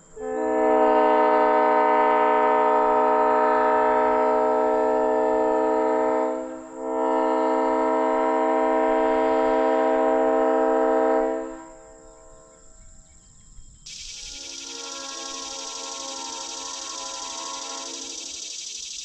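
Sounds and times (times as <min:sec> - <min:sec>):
air horn chord blasts: 0:14.1 - 0:18.6.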